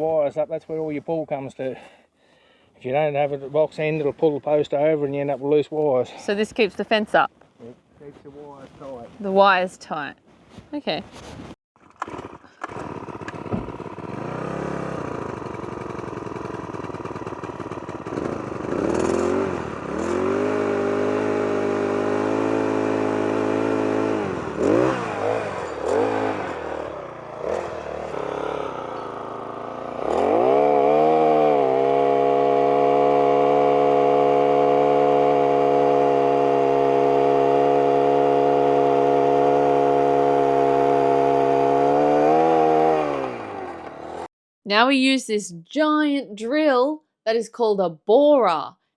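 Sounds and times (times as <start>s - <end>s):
engine revving: 11.9s - 44.3s.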